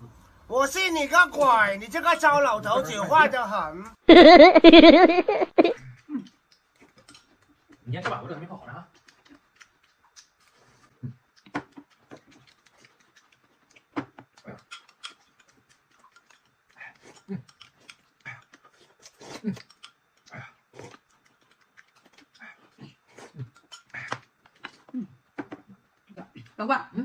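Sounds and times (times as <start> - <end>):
noodles slurped and chewed: 8.9 - 26.5.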